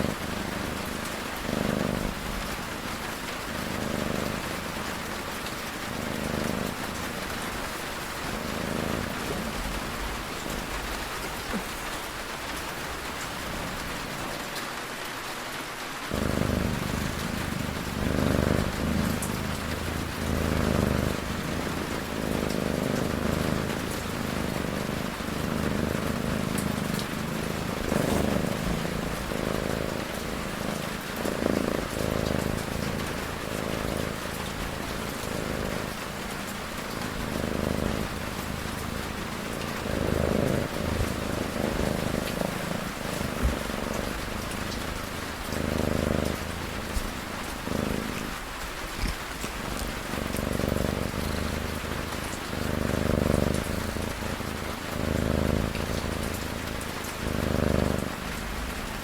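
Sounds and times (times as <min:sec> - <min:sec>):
cat snoring: 0:00.0 - 0:14.4, 0:16.0 - 0:59.0
steady rain: 0:00.0 - 0:59.0.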